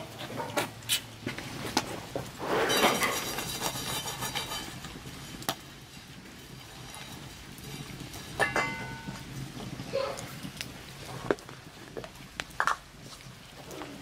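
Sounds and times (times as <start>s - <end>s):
ringing metal clink: 8.4s - 9.2s.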